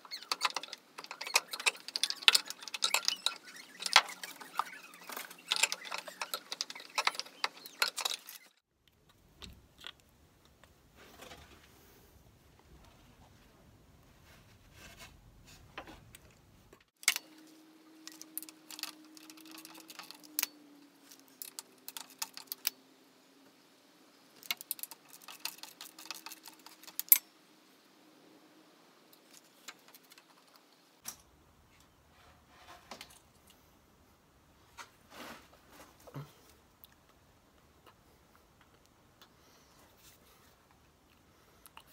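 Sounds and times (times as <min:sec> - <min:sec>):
metal objects clicking and clinking: 0:00.0 - 0:08.6, 0:17.0 - 0:22.8, 0:24.4 - 0:27.3, 0:29.1 - 0:31.3.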